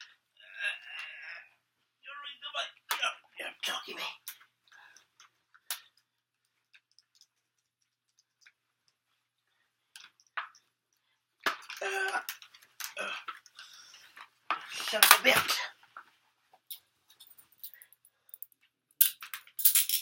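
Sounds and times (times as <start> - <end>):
grunt or exclamation: 0.4 - 1.5, 11.8 - 13.4.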